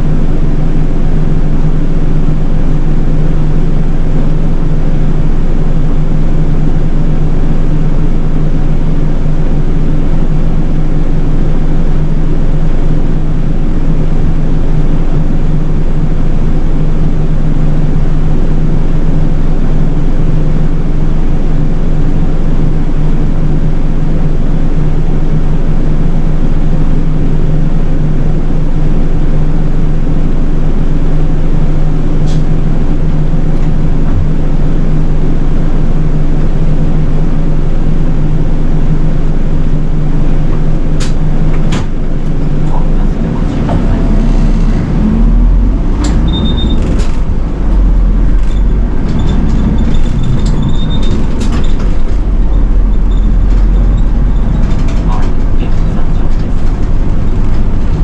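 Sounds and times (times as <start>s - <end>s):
bus engine droning: 0.0s - 58.0s
road noise: 39.4s - 58.0s.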